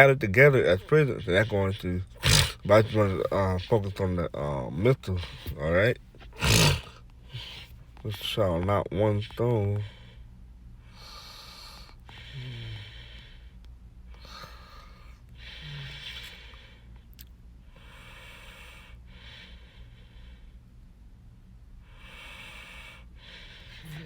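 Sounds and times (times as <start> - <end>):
low electrical hum: 0.0 - 24.0
man breathing close to microphone: 5.0 - 8.0, 9.1 - 17.0, 17.6 - 20.8, 21.8 - 24.0.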